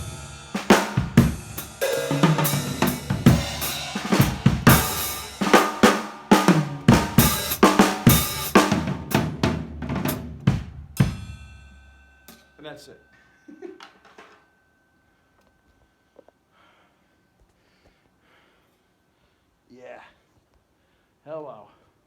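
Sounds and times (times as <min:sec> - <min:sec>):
drum kit playing: 0:00.0 - 0:12.4.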